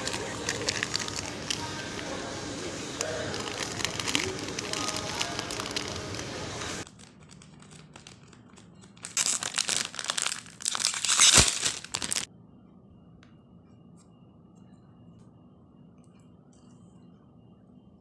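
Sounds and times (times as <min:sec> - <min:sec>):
plastic wrapper crinkling and tearing: 0:00.0 - 0:02.2, 0:02.9 - 0:12.3.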